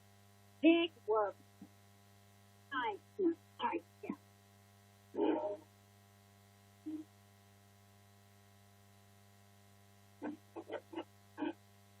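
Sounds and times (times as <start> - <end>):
steady electrical hum: 0.0 - 12.0
short voice-like sounds: 6.9 - 7.1.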